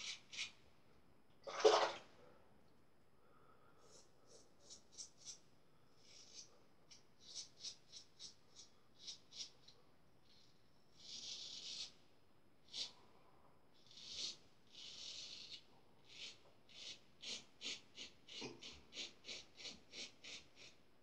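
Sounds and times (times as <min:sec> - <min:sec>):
razor cutting lathered stubble: 0:13.9 - 0:20.7.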